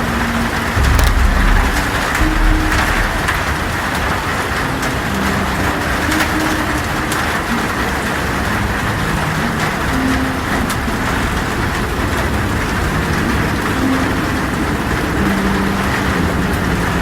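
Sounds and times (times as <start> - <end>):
heavy rain on a tin roof: 0.0 - 17.0
low rumble: 0.8 - 4.3.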